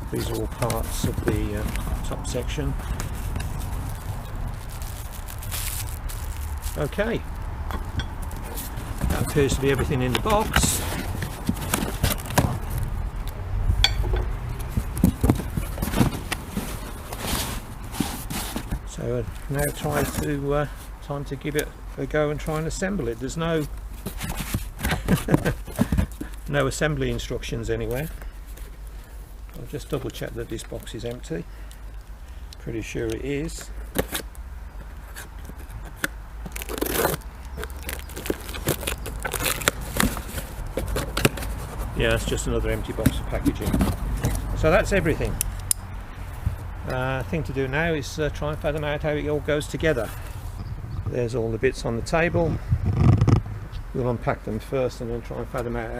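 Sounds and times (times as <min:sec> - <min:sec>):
cardboard packaging rustling: 0:00.0 - 0:21.6, 0:22.3 - 0:31.3, 0:33.3 - 0:45.4.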